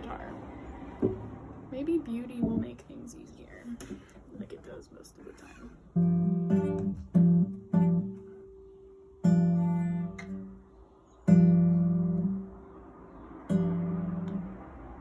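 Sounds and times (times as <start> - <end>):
acoustic guitar chords strummed: 1.0 - 3.0, 5.9 - 15.0.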